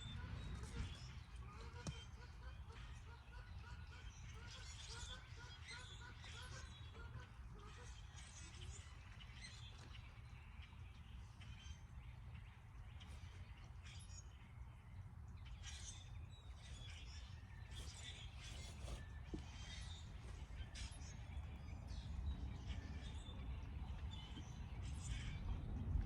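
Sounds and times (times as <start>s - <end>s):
birds chirping: 0.0s - 26.0s
steady low rumble: 19.0s - 26.0s.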